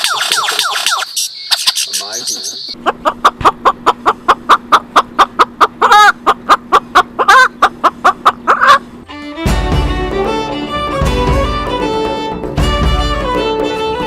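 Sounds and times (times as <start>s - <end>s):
bird squawks: 0.0s - 2.8s
bird clucking calls: 0.0s - 9.0s.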